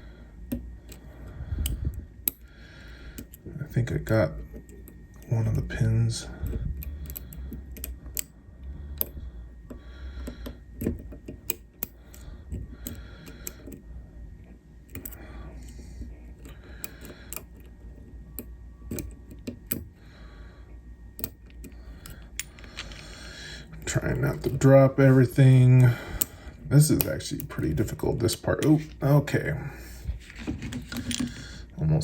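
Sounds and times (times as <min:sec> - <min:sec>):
lock picks clicking and scraping: 0:00.5 - 0:02.5, 0:03.1 - 0:03.4, 0:06.4 - 0:08.3, 0:09.0 - 0:13.8, 0:14.8 - 0:19.9, 0:21.2 - 0:24.6, 0:30.6 - 0:31.4.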